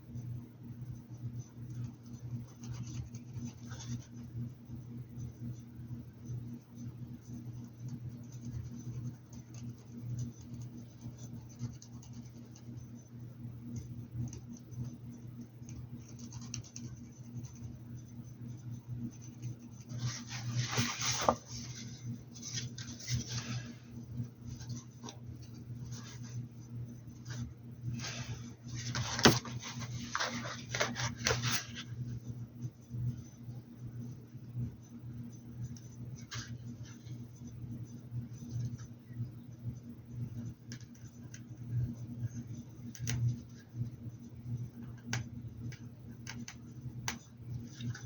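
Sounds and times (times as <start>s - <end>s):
steady low hum: 0.0s - 48.0s
paintbrush scratching and rubbing: 16.1s - 32.0s.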